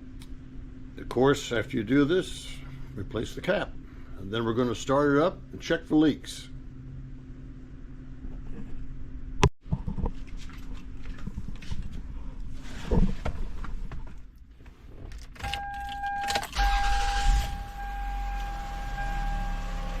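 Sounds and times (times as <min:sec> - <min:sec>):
car engine starting and idling: 0:15.2 - 0:20.0
car warning tone: 0:15.4 - 0:20.0.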